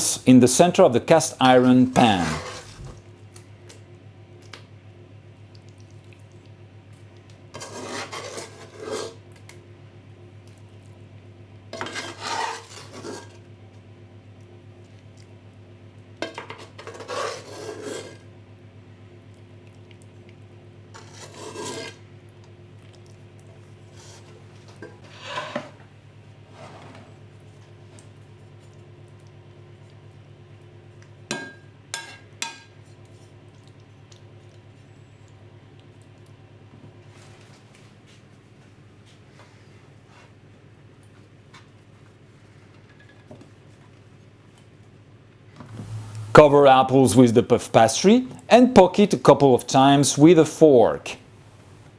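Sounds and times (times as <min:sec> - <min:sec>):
utensil scraping cast iron pan: 0:01.4 - 0:03.0, 0:07.6 - 0:09.2, 0:11.8 - 0:13.4, 0:16.8 - 0:18.2, 0:21.0 - 0:22.0, 0:25.0 - 0:25.7
steady low hum: 0:45.7 - 0:51.9.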